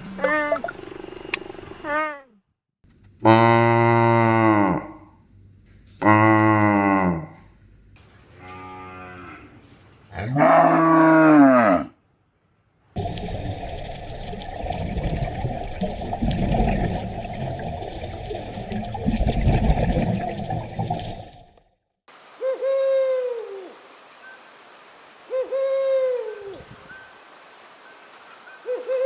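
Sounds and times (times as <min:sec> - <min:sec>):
cow mooing: 0:08.4 - 0:09.6, 0:10.2 - 0:11.9.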